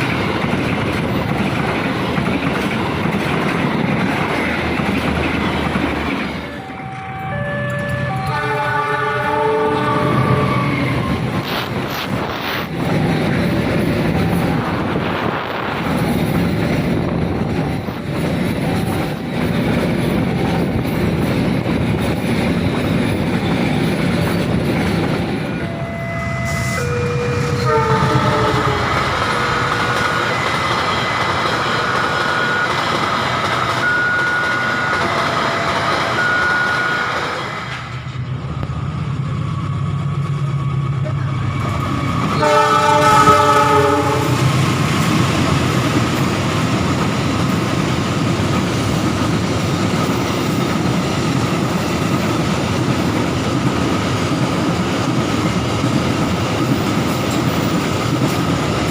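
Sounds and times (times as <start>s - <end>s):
train wheels on rails: 0.0s - 58.9s
locomotive air horn: 6.6s - 11.0s, 25.6s - 29.9s, 33.8s - 37.3s, 42.4s - 44.5s.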